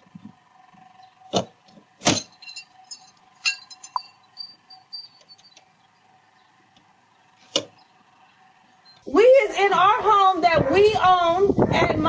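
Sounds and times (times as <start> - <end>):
glass tinkling: 2.2 - 5.6.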